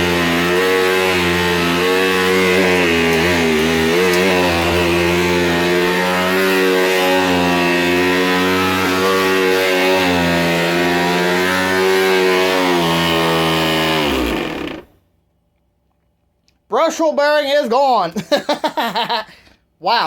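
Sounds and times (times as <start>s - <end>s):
vacuum cleaner running: 0.0s - 14.9s.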